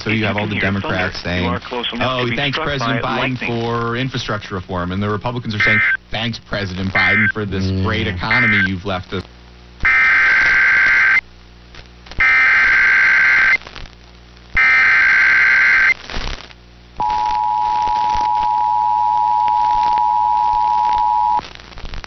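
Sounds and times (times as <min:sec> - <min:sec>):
data burst tones: 0:05.6 - 0:06.0, 0:07.0 - 0:07.4, 0:08.3 - 0:08.8, 0:09.8 - 0:11.2, 0:12.2 - 0:13.6, 0:14.6 - 0:16.0, 0:17.0 - 0:21.4
two-tone attention signal: 0:17.0 - 0:21.4.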